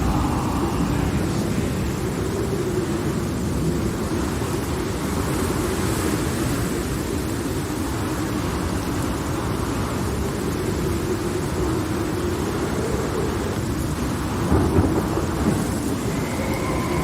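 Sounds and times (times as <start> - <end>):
faint hiss: 0.0 - 17.0
low thunder rumble: 0.0 - 17.0.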